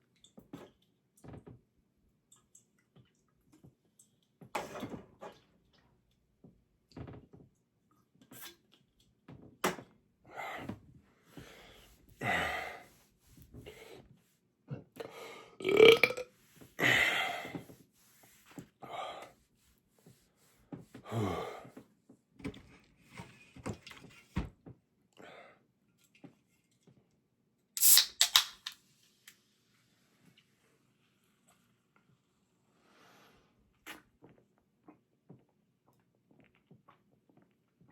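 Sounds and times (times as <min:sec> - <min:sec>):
man belching: 0:15.6 - 0:16.3.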